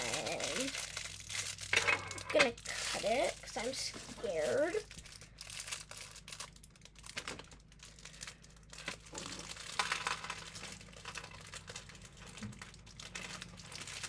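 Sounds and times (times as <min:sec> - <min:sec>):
plastic wrapper crinkling: 0:00.0 - 0:14.0.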